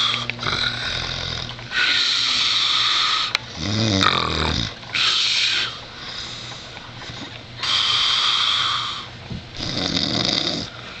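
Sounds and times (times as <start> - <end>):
heavy rasping snoring: 0.0 - 4.8, 9.6 - 10.8.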